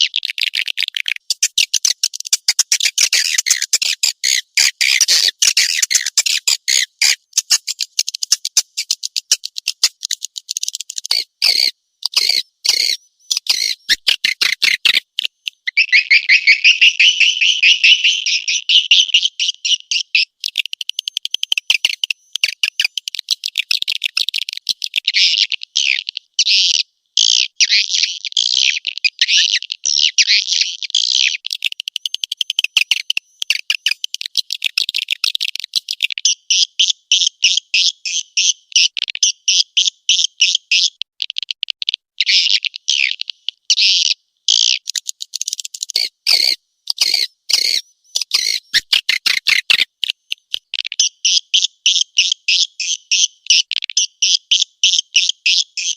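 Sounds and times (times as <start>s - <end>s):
swiftlets chattering twitters: 0.0s - 15.7s, 20.4s - 25.1s, 31.5s - 36.1s, 44.8s - 50.7s
rough deeper bird calls: 1.0s - 18.6s, 43.7s - 50.6s.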